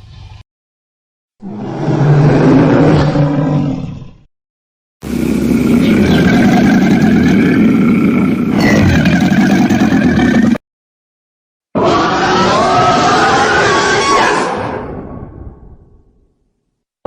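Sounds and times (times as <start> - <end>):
long low rough roar: 1.4 - 4.3, 5.0 - 10.6.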